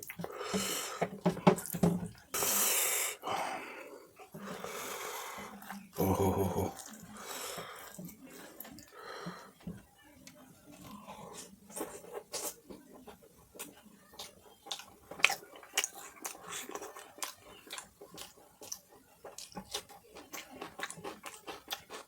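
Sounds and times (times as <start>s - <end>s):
person chewing: 10.3s - 22.0s.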